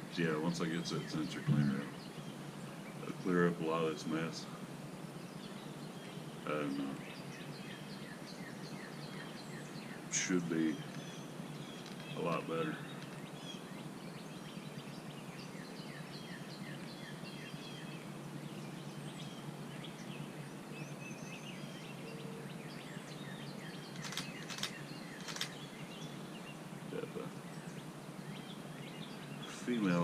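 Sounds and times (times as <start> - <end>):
birds chirping: 0.0 - 30.0
steady low hum: 0.0 - 30.0
sharp clicks: 23.9 - 25.6.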